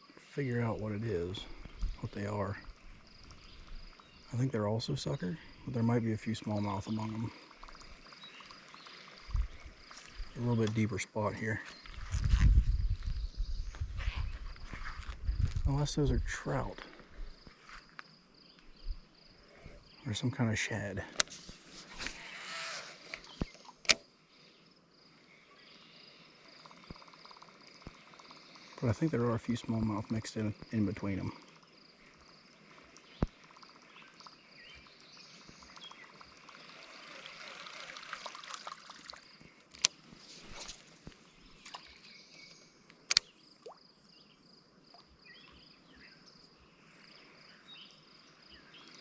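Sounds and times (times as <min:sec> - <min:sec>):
faint insect chirring: 0:00.0 - 0:49.0
sharp click: 0:23.1 - 0:24.1, 0:43.1 - 0:43.3
bird-like chirps: 0:25.4 - 0:38.1.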